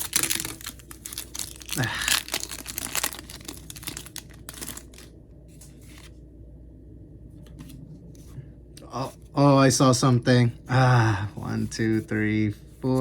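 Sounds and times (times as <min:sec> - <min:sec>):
foil wrapper tearing and crinkling: 0:00.0 - 0:05.1.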